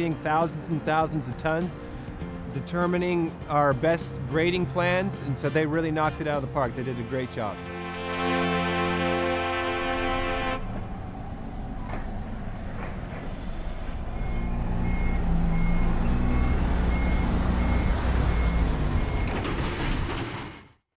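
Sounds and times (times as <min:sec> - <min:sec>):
heavy vehicle engine rumbling: 0:08.1 - 0:20.5.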